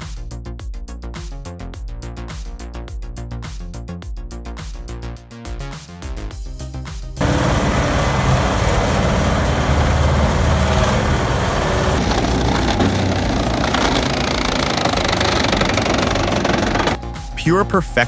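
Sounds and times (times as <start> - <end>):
grinding and knocking: 7.2 - 17.0
wood-processing machine engine drone: 7.2 - 17.0.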